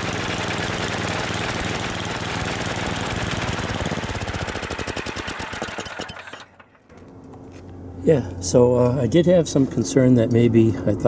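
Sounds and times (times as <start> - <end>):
snow blower engine running: 0.0 - 6.9.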